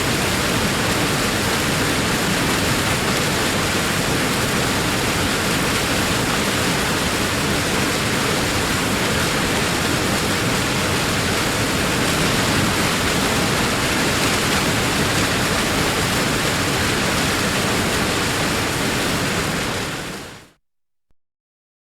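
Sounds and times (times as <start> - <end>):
heavy waterfall rushing: 0.0 - 20.6.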